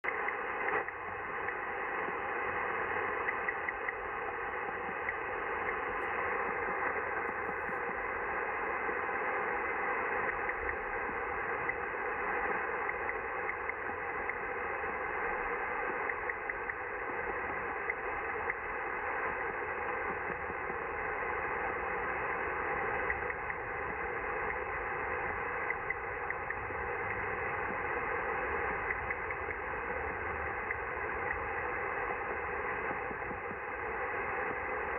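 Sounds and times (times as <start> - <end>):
quick irregular clicking signal: 0.0 - 7.9, 9.6 - 34.9
muffled radio static hiss: 0.0 - 34.9.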